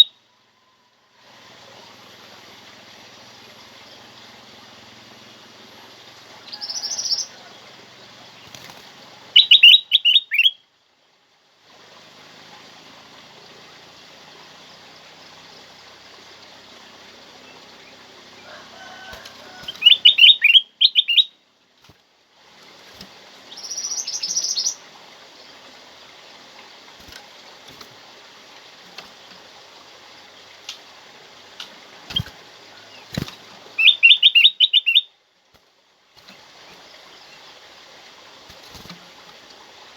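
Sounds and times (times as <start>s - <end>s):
background hiss: 0.0s - 39.9s
bird singing bright phrases: 6.4s - 7.3s, 9.4s - 10.6s, 19.5s - 21.4s, 23.5s - 24.8s, 32.0s - 35.1s.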